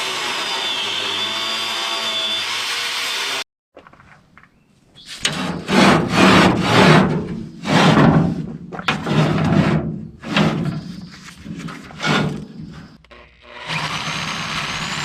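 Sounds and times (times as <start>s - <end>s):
hand tool rubbing against wood: 5.0s - 13.0s.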